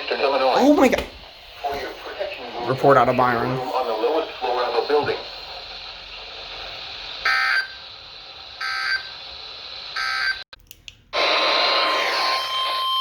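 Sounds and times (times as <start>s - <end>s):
radio static: 0.0s - 8.0s
clicks: 10.5s - 11.1s.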